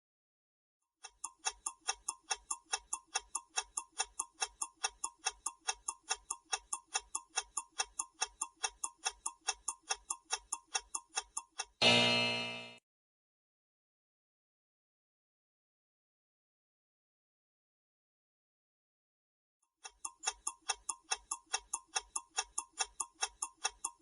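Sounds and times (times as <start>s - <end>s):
clock ticking: 1.0s - 12.8s, 19.8s - 24.0s.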